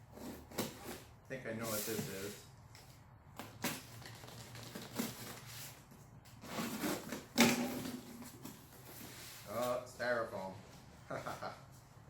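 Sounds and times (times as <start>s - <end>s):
cardboard package rustling: 3.6s - 7.4s.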